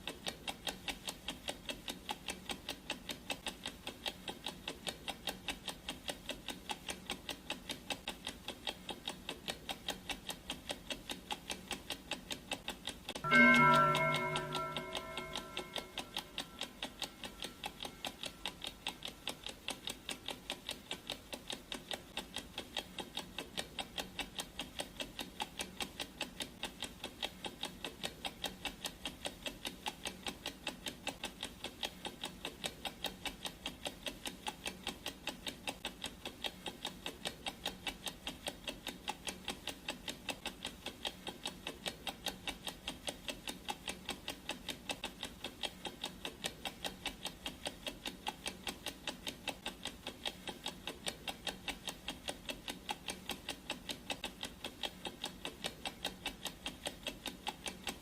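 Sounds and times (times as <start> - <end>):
clock ticking: 0.0 - 58.0.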